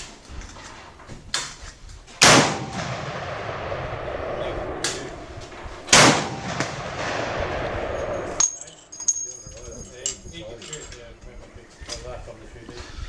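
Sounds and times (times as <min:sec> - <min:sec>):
rifle shots with rumbling echo: 0:02.2 - 0:08.4.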